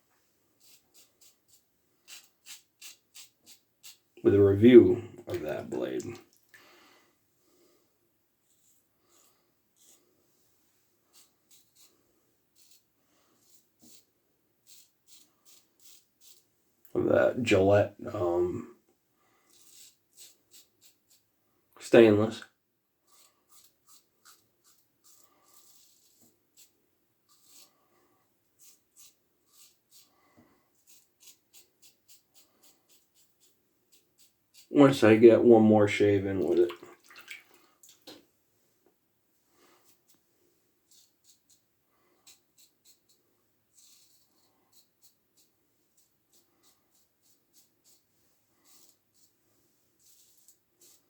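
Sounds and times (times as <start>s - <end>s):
razor scraping stubble: 0.6s - 4.0s.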